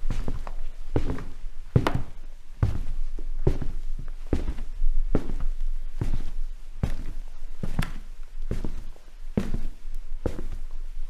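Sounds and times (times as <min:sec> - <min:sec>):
footsteps on wooden floor: 0:00.1 - 0:10.6.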